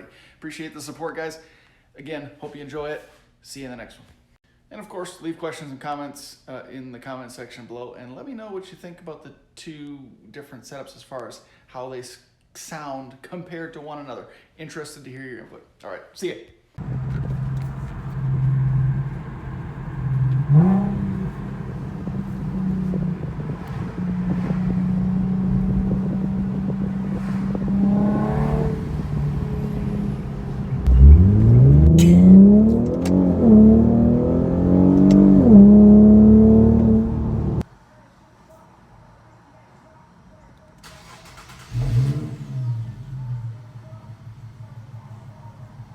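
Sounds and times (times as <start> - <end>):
car engine idling and revving: 16.8 - 37.6, 41.0 - 45.9.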